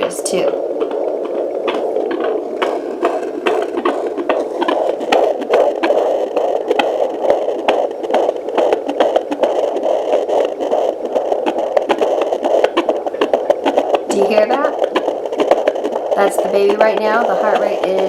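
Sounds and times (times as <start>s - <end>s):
fetal heartbeat pulses: 0.0s - 18.0s
steady hiss: 0.0s - 18.0s.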